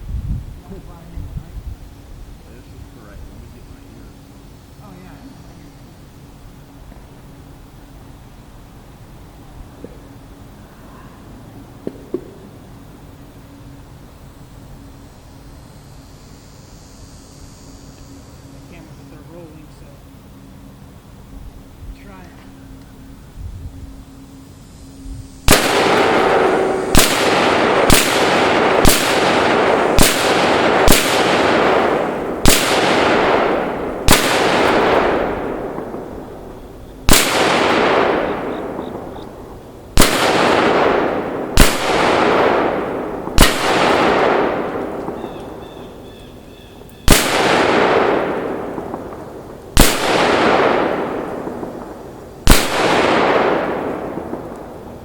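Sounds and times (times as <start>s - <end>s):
rifle shots with rolling echo: 11.6s - 13.7s, 25.4s - 55.0s.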